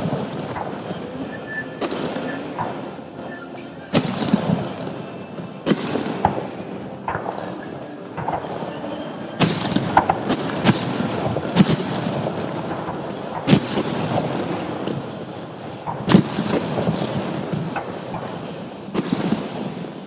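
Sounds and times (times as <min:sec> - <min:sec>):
firework whistle: 0:00.0 - 0:12.4
fireworks crackling: 0:00.0 - 0:20.0
firework shells bursting: 0:03.9 - 0:05.0, 0:05.7 - 0:15.2, 0:15.9 - 0:20.0.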